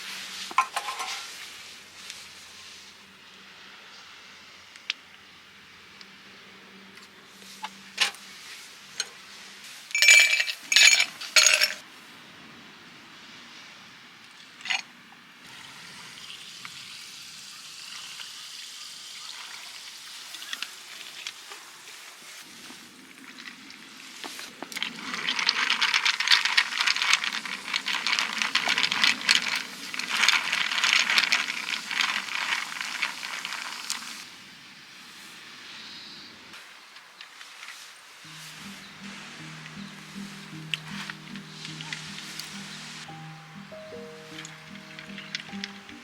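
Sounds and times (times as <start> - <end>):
food sizzling in a pan: 15.5 - 22.9.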